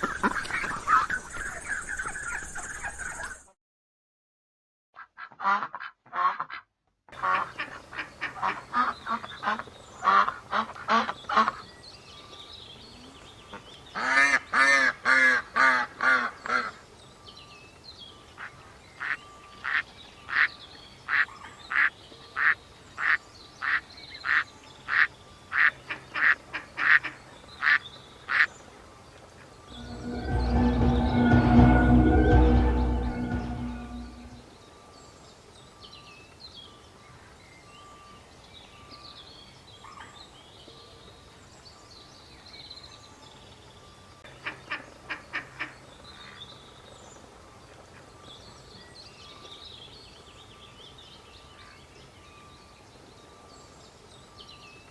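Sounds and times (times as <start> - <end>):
held chord with deep bass: 29.7 - 34.4.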